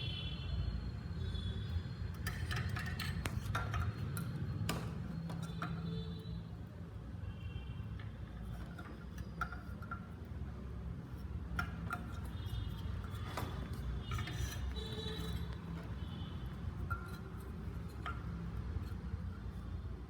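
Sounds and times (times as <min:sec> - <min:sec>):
clicks and taps of tools: 0:02.2 - 0:06.0, 0:08.0 - 0:10.3, 0:11.2 - 0:16.0, 0:16.6 - 0:19.2.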